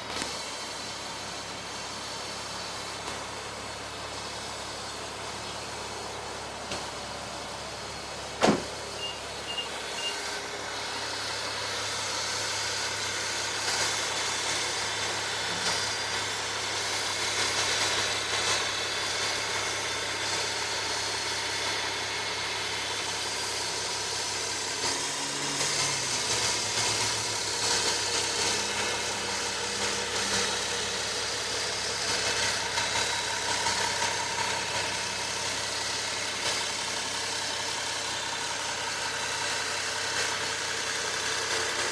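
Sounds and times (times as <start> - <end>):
car engine running with whine: 0.0 - 41.9
sharp knock: 8.4 - 8.8
short high beeps: 9.0 - 10.2.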